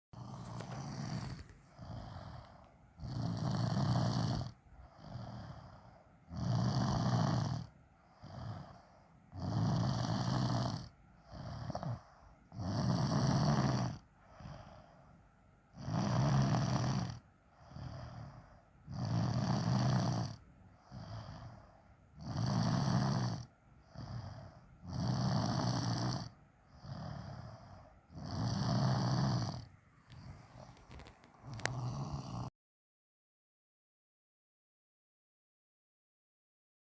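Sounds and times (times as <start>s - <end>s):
soft breathing: 0.2s - 6.3s, 7.6s - 9.3s, 10.8s - 12.5s, 14.0s - 15.5s, 17.2s - 18.9s, 19.7s - 22.2s, 23.4s - 24.9s, 26.6s - 32.5s
loud snoring: 0.2s - 15.0s, 15.7s - 32.5s.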